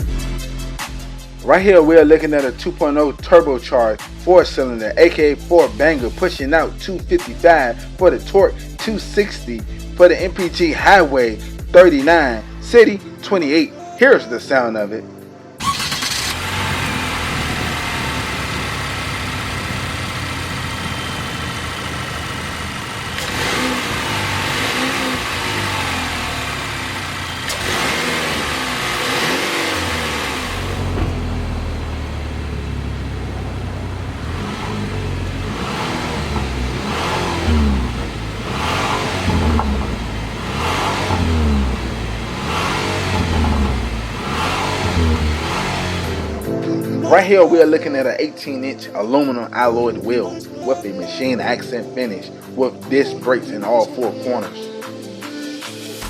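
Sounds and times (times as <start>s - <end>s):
car engine revving: 15.6s - 46.5s.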